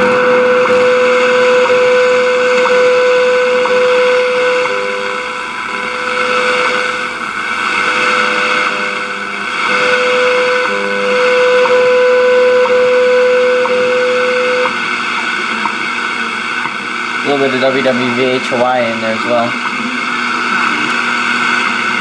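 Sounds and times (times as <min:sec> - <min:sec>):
radio static hiss: 0:00.0 - 0:22.0
steady radio tone: 0:00.0 - 0:22.0.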